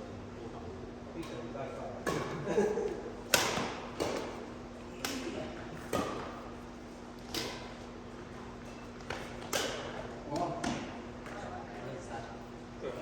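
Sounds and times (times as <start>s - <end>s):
rackets hitting shuttlecock: 2.0s - 2.4s, 3.2s - 6.6s, 7.2s - 7.9s, 9.0s - 11.4s.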